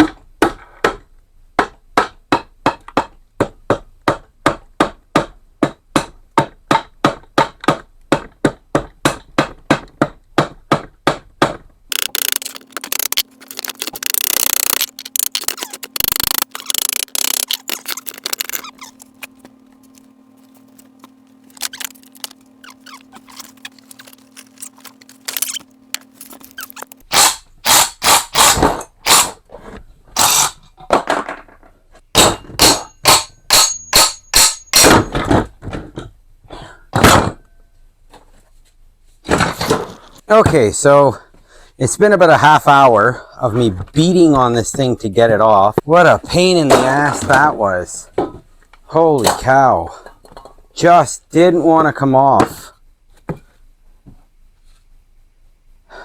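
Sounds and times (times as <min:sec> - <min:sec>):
steady low hum: 0:11.8 - 0:30.6
scraping and squeaking: 0:11.9 - 0:27.1.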